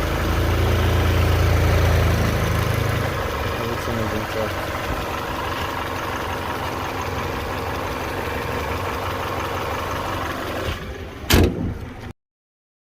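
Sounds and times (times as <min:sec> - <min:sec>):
car engine idling: 0:00.0 - 0:12.1
loud thump: 0:11.3 - 0:11.8.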